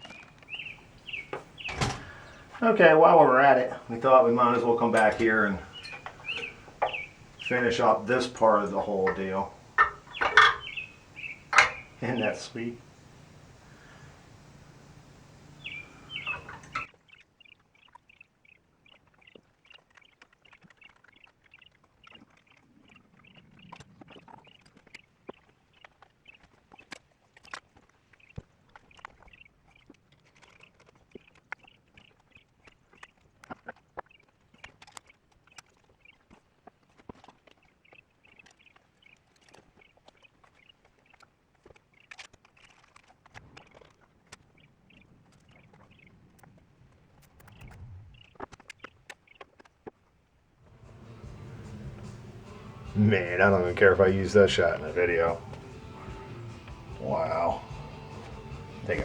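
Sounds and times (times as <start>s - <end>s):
small birds chirping: 0.0s - 33.2s, 34.0s - 36.4s, 37.5s - 49.7s, 50.7s - 59.0s
steady low hum: 0.4s - 16.9s, 50.7s - 59.0s.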